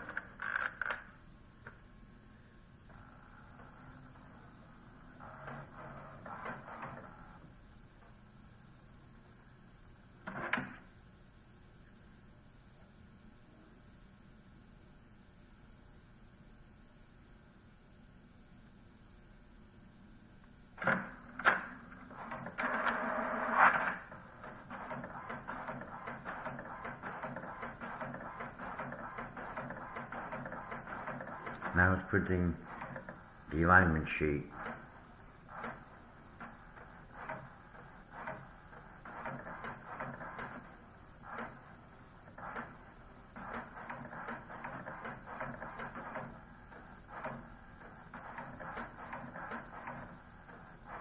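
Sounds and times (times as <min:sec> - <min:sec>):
printer motor whirring: 0:02.9 - 0:07.5, 0:20.8 - 0:51.0
printer sharp clicks: 0:10.2 - 0:10.9, 0:20.8 - 0:32.0
rapid clicking and whirring: 0:20.8 - 0:31.8, 0:34.5 - 0:51.0.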